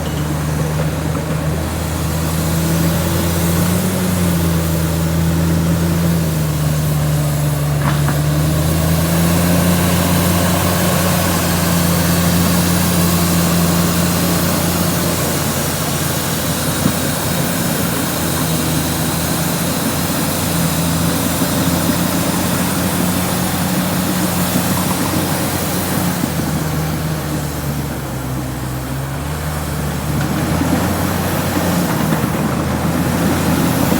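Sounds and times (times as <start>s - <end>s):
bulldozer diesel engine running: 0.0s - 33.9s.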